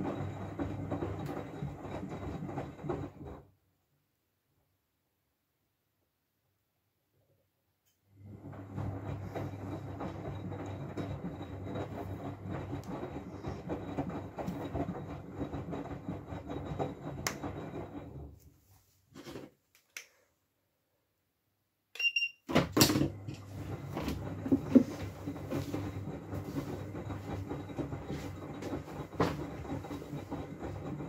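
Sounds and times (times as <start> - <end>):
washing machine drum churning: 0.0 - 3.5, 8.2 - 18.4, 22.4 - 31.0.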